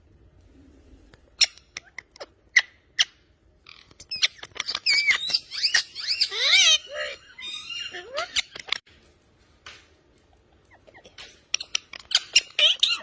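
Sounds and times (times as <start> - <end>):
parrot chirps and clicks: 1.4 - 6.8, 7.4 - 8.9, 10.4 - 13.0.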